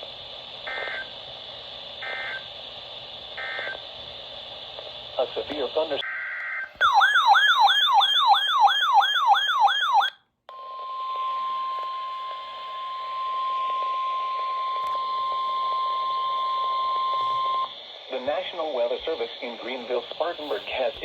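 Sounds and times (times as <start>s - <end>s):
steady warning alarm tone: 2.0s - 2.5s, 3.4s - 3.8s, 6.0s - 17.7s
faint hiss: 17.6s - 21.0s.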